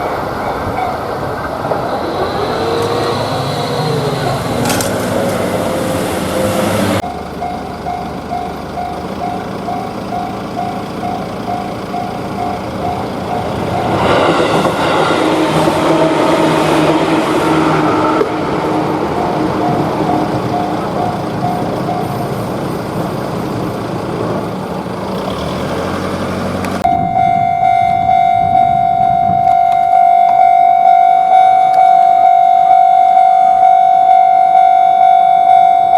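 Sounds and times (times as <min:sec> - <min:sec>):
railroad crossing warning bell: 0:00.0 - 0:25.4, 0:26.8 - 0:35.9
loud passing train: 0:00.0 - 0:35.9
steady held tone: 0:01.8 - 0:24.1, 0:26.8 - 0:35.9.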